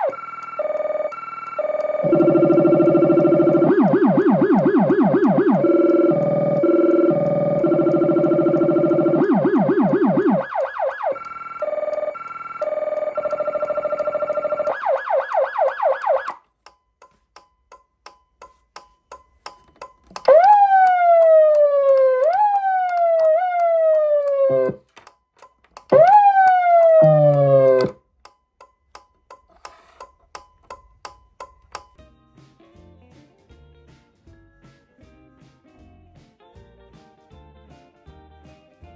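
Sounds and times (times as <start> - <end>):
deep siren rumble tone: 0.0 - 16.3, 20.3 - 24.8, 26.0 - 27.9
electronic siren yelp sweeps: 0.0 - 16.4, 20.3 - 24.8, 25.9 - 28.0.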